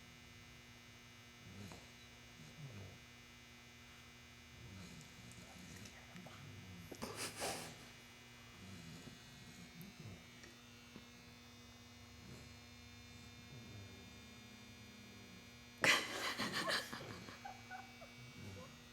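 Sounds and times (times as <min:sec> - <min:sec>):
puppy snoring: 0:01.4 - 0:03.0, 0:04.4 - 0:07.9, 0:08.5 - 0:10.6, 0:11.9 - 0:18.9
raspy snorts: 0:04.6 - 0:07.8.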